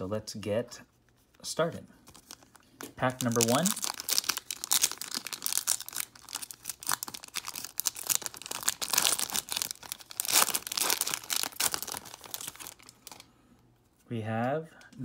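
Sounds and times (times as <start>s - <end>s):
wrapper tearing and crinkling: 2.1s - 13.3s.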